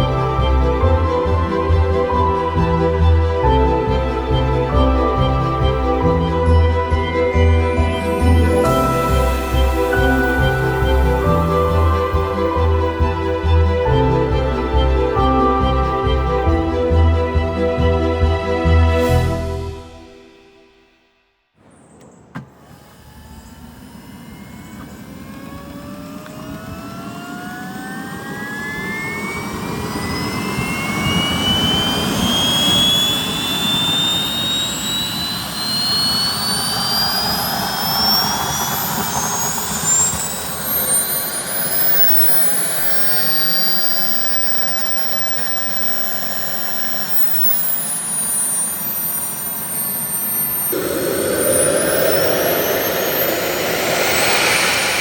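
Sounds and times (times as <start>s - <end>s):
model jet engine whine: 0.0s - 15.8s, 21.7s - 55.0s
loud air rush: 30.8s - 55.0s.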